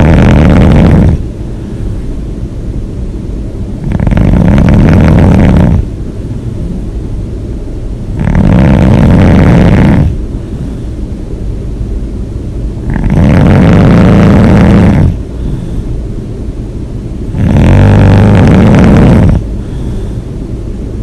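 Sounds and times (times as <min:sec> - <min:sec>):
person snoring loudly: 0:00.0 - 0:01.2, 0:03.8 - 0:05.9, 0:08.2 - 0:10.2, 0:12.8 - 0:15.2, 0:17.3 - 0:19.5
low snoring rumble: 0:00.0 - 0:01.3, 0:03.8 - 0:07.0, 0:08.1 - 0:10.8, 0:12.8 - 0:15.9, 0:17.3 - 0:20.2.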